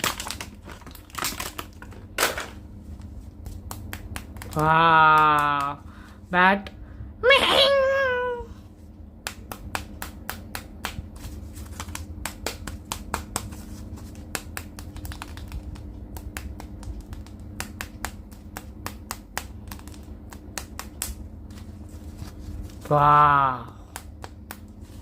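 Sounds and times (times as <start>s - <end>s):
plastic packaging clicks and crackles: 0.0s - 2.4s, 14.4s - 21.2s
low steady hum: 0.0s - 25.0s.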